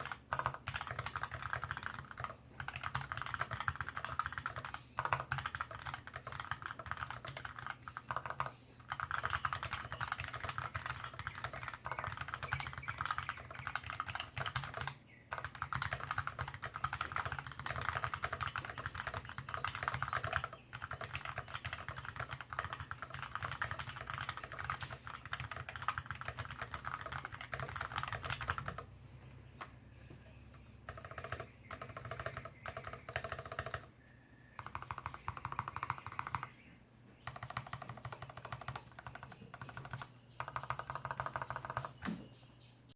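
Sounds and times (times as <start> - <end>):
mechanical keyboard typing: 0.0 - 29.7, 30.8 - 33.9, 34.5 - 36.5, 37.2 - 42.1.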